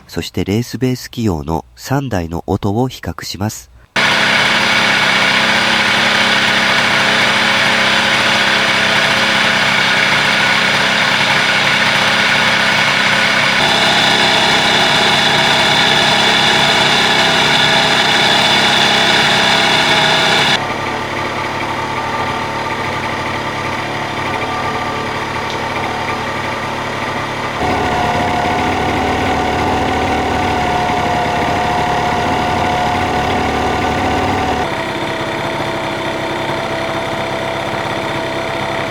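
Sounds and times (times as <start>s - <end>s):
loud high hiss: 4.0s - 20.6s
scooter engine idling: 4.0s - 38.9s.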